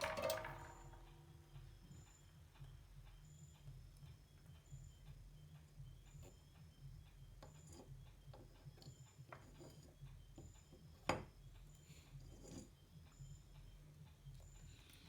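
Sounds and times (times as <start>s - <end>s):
small tools clicking and tapping: 7.1s - 13.7s.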